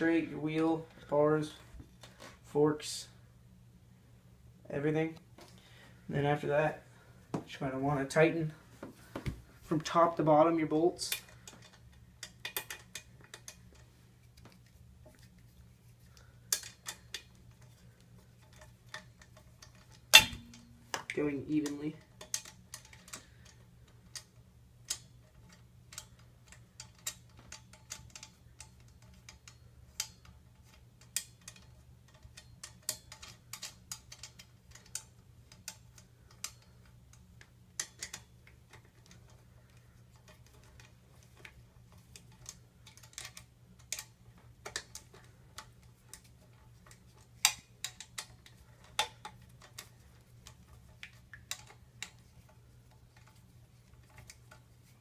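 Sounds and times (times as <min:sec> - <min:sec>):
faint low hum: 0:00.0 - 0:55.0
wrench metal clicks: 0:37.8 - 0:54.6.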